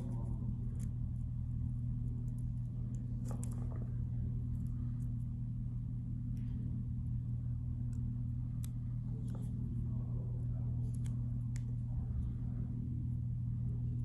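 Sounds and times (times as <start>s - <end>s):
low electrical hum: 0.0s - 14.0s
faint clicks and rustles: 1.9s - 5.4s.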